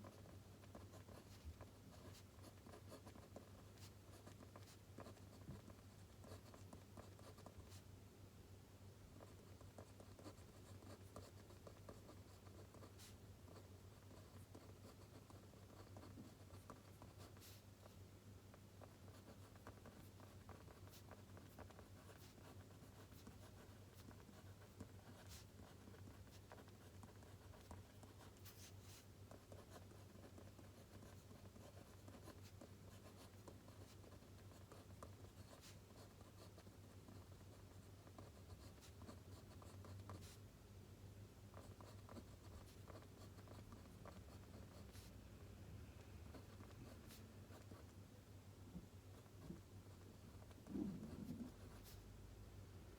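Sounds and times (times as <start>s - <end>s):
pen scratching on paper: 0.0s - 7.8s, 9.2s - 18.0s, 18.8s - 40.4s, 41.5s - 45.1s, 46.3s - 47.9s, 49.1s - 52.0s
low steady hum: 0.0s - 52.9s.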